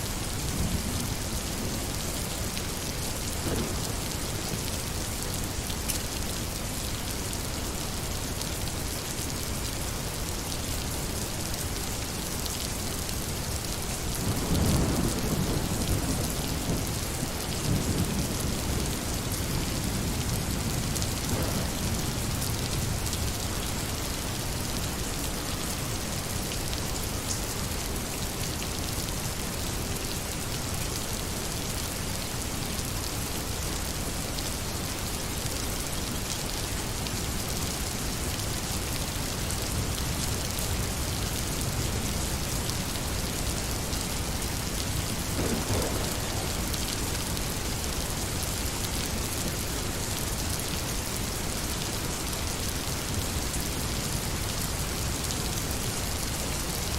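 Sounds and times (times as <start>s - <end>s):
rain falling on a surface: 0.0s - 56.9s
thunder rumbling: 14.3s - 23.1s, 45.1s - 49.3s.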